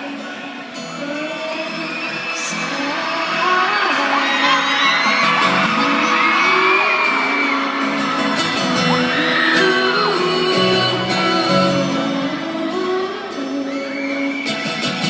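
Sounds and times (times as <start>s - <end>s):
crowd screaming and whooping: 0.0s - 15.0s
live band music: 13.9s - 15.0s.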